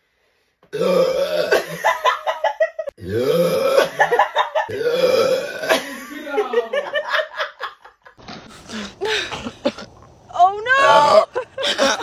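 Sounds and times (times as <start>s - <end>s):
woman burping: 0.8s - 1.9s, 3.0s - 6.0s.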